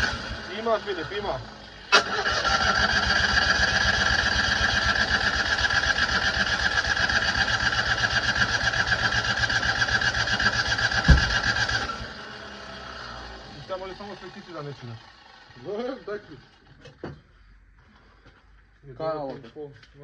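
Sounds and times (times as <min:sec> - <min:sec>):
starter motor cranking engine: 0:00.0 - 0:17.0
thump: 0:11.0 - 0:11.6, 0:16.8 - 0:17.3.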